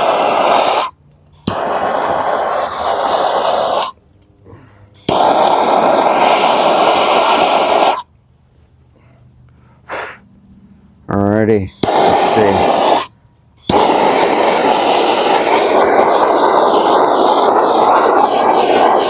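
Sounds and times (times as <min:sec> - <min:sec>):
propane torch flame hissing: 0:00.0 - 0:04.0, 0:04.9 - 0:08.1, 0:11.7 - 0:19.0
torch igniter click: 0:00.0 - 0:04.0, 0:05.0 - 0:08.0, 0:11.8 - 0:19.0.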